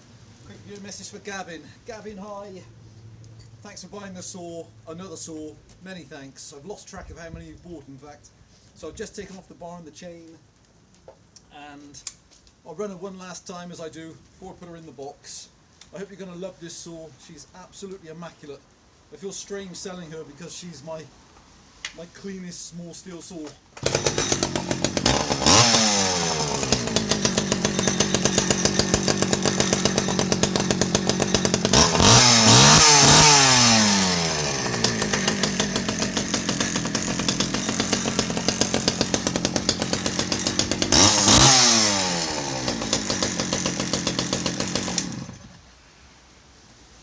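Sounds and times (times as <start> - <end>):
chainsaw engine revving and idling: 23.8 - 45.6.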